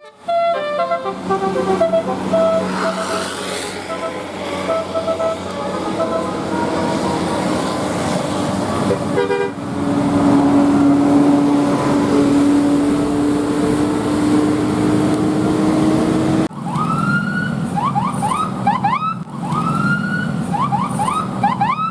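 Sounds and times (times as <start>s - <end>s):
musical bus horn: 0.0s - 14.7s.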